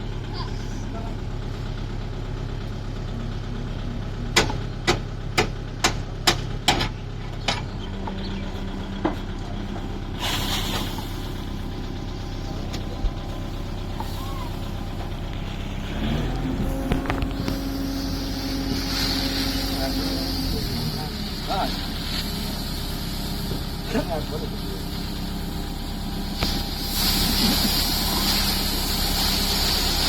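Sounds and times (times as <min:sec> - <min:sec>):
diesel engine running: 0:00.0 - 0:30.0
brief hiss: 0:10.2 - 0:11.3.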